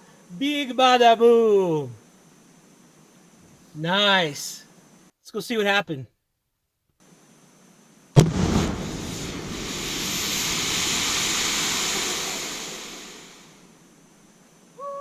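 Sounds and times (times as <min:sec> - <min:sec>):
explosive bang: 0:08.2 - 0:13.6
gas hissing from tank: 0:08.2 - 0:14.0.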